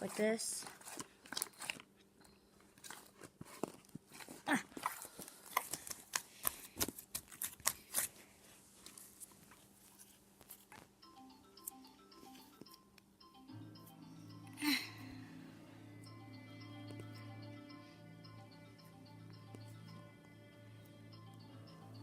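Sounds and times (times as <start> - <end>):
sticky slime squelching: 0.0 - 2.1, 2.7 - 8.2
faint mallet music: 11.0 - 22.0.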